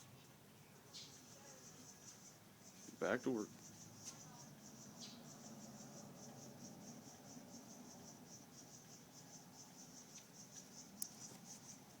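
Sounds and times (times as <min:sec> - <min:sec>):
cricket chirping: 0:00.0 - 0:12.0.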